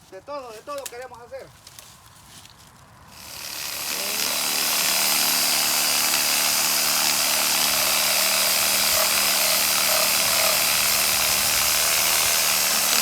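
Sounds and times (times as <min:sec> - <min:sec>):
power saw cutting wood: 0:03.2 - 0:13.0.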